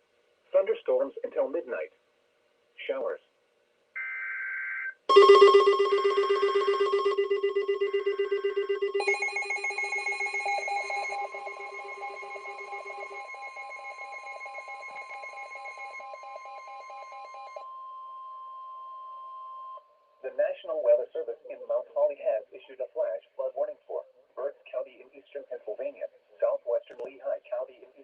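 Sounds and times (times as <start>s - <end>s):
loud pulsing alarm: 5.1s - 18.1s
steady alarm tone: 5.1s - 18.1s.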